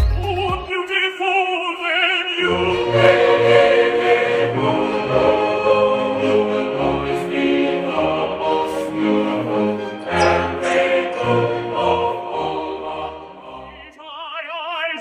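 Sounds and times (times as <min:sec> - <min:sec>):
choir singing held chords: 0:02.2 - 0:14.1.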